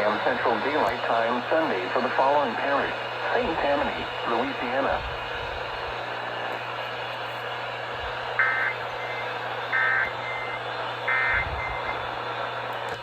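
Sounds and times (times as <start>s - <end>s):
radio hiss and hum: 0.0s - 13.0s
warbling digital data tones: 8.4s - 9.2s, 9.8s - 12.0s.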